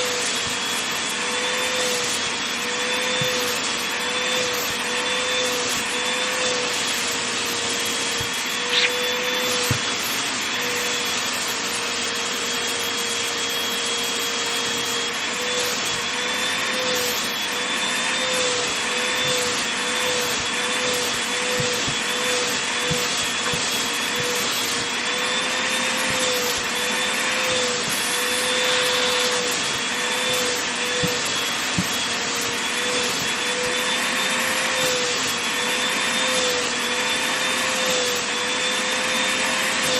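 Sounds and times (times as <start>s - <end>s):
vacuum cleaner motor whine: 0.0s - 39.9s.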